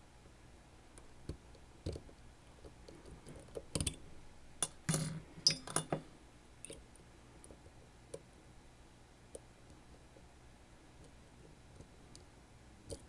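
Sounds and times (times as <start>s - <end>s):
sharp knocks and clinks: 4.6s - 6.1s.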